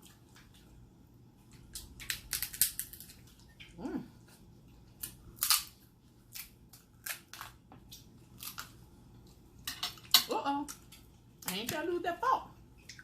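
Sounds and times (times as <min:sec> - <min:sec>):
crab shells cracking: 0:01.6 - 0:03.4, 0:05.0 - 0:08.8.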